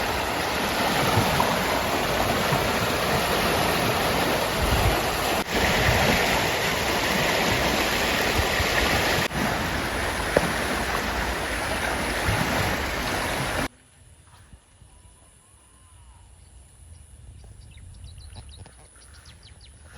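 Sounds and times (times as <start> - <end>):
river water rushing: 0.0 - 13.7.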